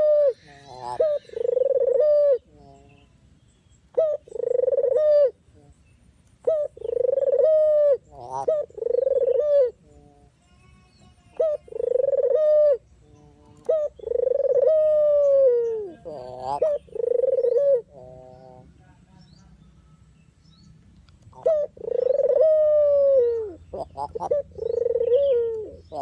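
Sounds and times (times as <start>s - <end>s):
dove cooing: 0.0s - 3.0s, 3.9s - 5.7s, 6.4s - 10.3s, 11.4s - 18.7s, 21.3s - 26.0s.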